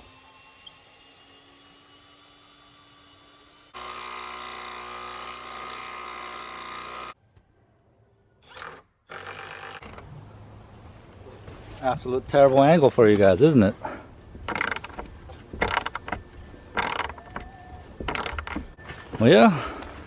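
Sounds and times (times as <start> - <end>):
power drill whirring: 3.7 - 7.2, 15.6 - 17.4, 18.0 - 18.6.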